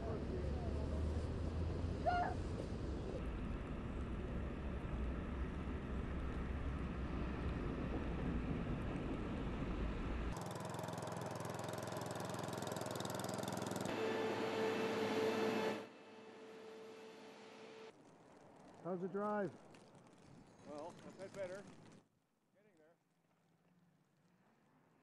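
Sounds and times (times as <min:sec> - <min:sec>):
bright hissy noise: 0:13.9 - 0:17.9.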